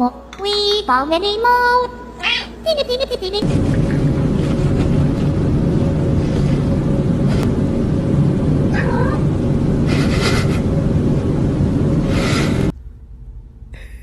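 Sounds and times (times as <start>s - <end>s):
cat meowing: 8.7s - 9.2s.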